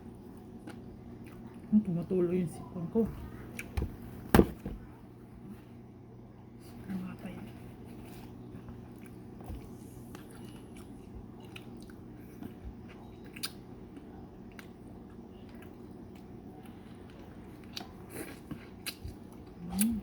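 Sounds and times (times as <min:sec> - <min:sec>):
steady low hum: 0:00.0 - 0:20.0
wet chewing mouth sounds: 0:08.6 - 0:20.0.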